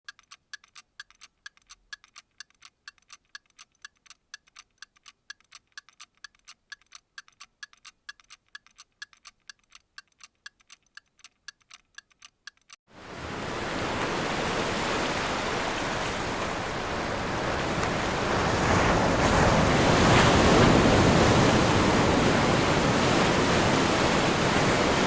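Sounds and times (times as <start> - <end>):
faint steady ticking: 0.0 - 12.8.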